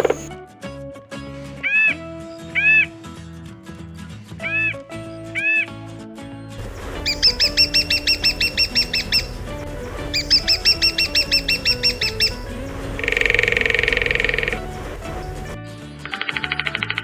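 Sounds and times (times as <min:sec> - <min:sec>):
bird chirping: 0:00.0 - 0:00.3, 0:06.6 - 0:15.6
background music: 0:06.6 - 0:17.0.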